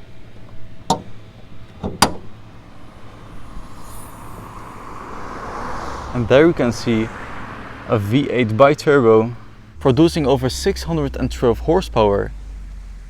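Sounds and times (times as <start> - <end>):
steady low hum: 0.7 - 13.0
sharp clunks of car bodywork: 0.8 - 2.4
rush of noise: 2.4 - 13.0.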